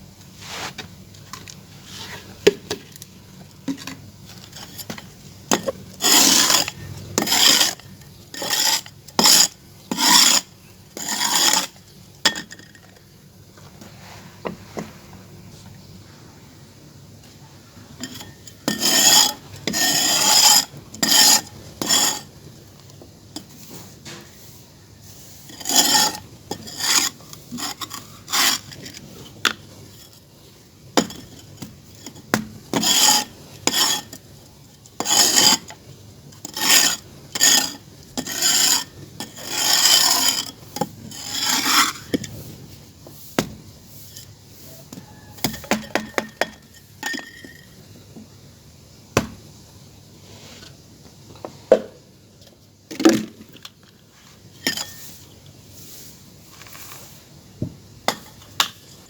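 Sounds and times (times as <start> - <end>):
hands scraping clay: 3.8 - 11.8, 18.0 - 22.3, 25.4 - 30.0, 31.0 - 34.2, 35.0 - 35.7, 36.4 - 43.4.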